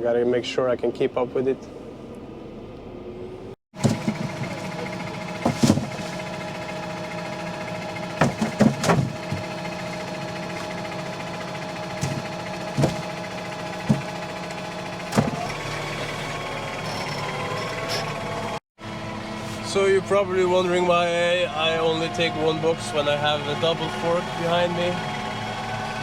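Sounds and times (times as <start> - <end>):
tractor engine running: 1.1 - 26.0
sharp clunks and rattles: 3.8 - 6.7, 7.6 - 15.6.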